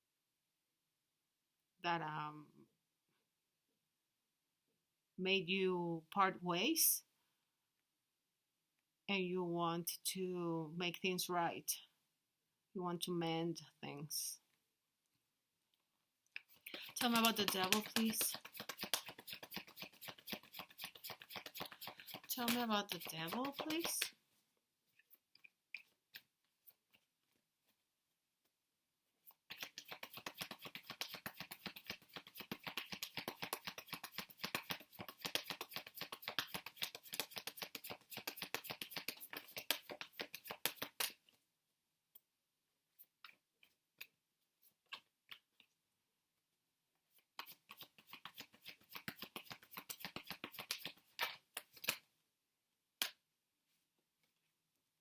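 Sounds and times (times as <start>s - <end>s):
cards being shuffled by hand: 16.4s - 24.1s, 29.3s - 41.2s, 47.2s - 52.0s.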